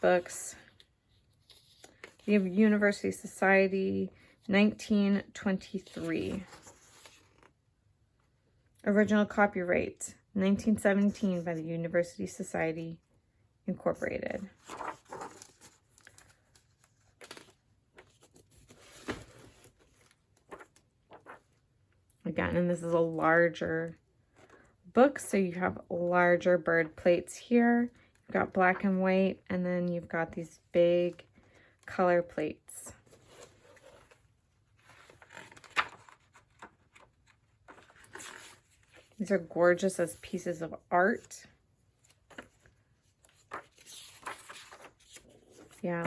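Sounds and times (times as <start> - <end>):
book pages rustling: 0.0 - 2.7, 5.6 - 7.6, 14.4 - 21.7, 33.0 - 41.3, 42.0 - 46.0.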